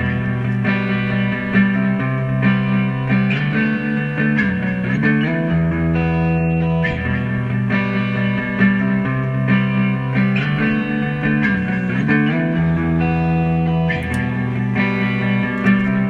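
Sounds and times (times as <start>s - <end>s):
bass line: 0.0s - 16.0s
guitar chords: 0.0s - 16.0s.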